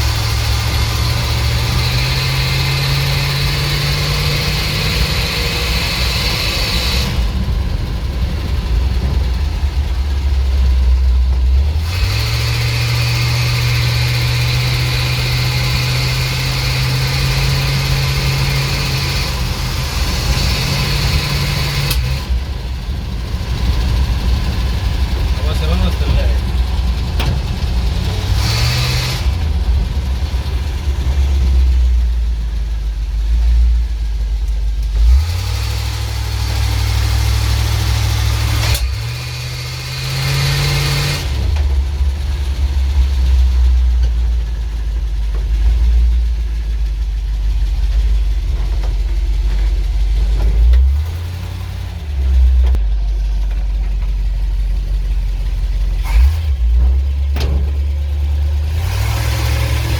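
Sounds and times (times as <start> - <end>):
truck engine revving: 0.0 - 59.9
engine backfire pops: 27.0 - 29.5, 55.5 - 59.9.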